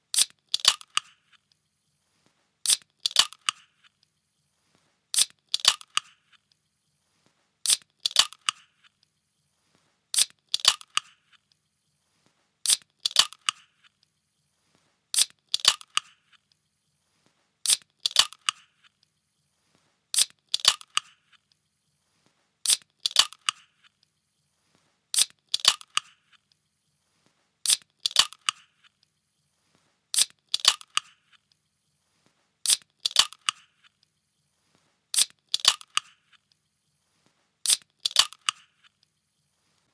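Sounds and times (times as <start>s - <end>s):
can being opened: 0.2s - 1.1s, 2.7s - 3.6s, 5.2s - 6.2s, 7.7s - 8.6s, 10.2s - 11.1s, 12.7s - 13.6s, 15.2s - 16.1s, 17.7s - 18.6s, 20.2s - 21.2s, 22.7s - 23.6s, 25.2s - 26.1s, 27.7s - 28.6s, 30.2s - 31.1s, 32.7s - 33.6s, 35.2s - 36.2s, 37.7s - 38.6s.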